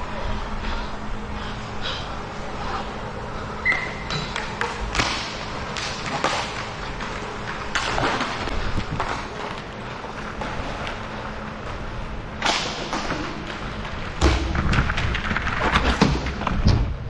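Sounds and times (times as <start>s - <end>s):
hockey sticks clacking on puck: 3.8s - 8.4s.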